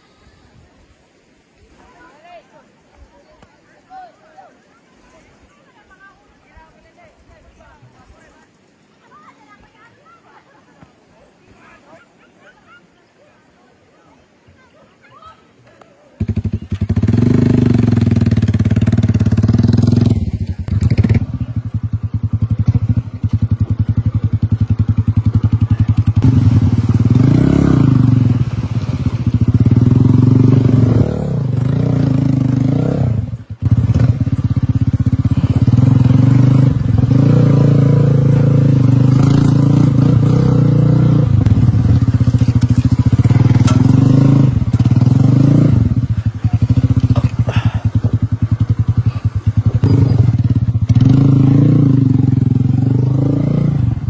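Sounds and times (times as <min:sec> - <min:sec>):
motorcycle engine running: 0:16.2 - 0:54.0.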